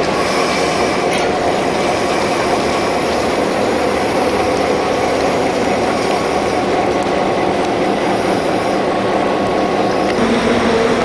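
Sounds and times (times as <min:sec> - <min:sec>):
locomotive engine droning: 0:00.0 - 0:11.0.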